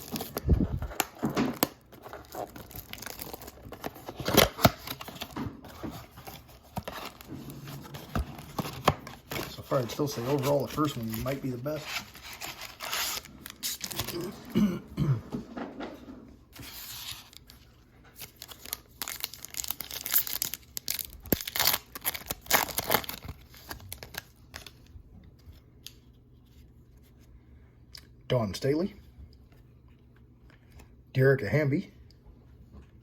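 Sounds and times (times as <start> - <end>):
wrappers tearing and crinkling: 0.0 - 5.4, 6.1 - 14.5, 18.2 - 24.8.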